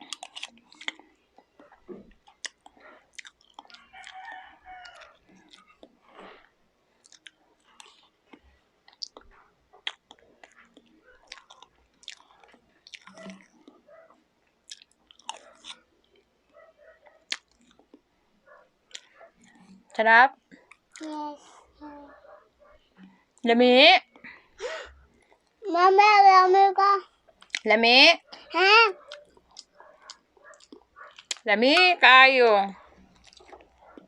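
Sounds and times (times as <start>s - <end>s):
chewing and lip smacking: 0.0s - 21.1s, 25.0s - 25.6s, 27.2s - 31.5s, 32.7s - 34.0s.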